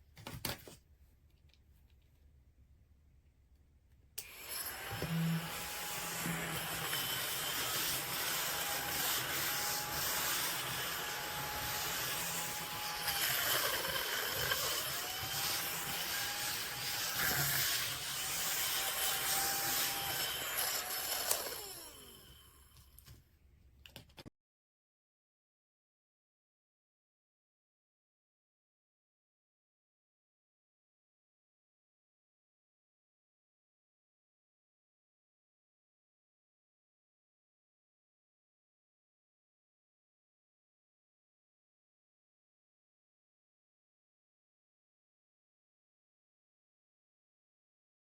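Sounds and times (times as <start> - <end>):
small vacuum cleaner whine: 4.2 - 23.0.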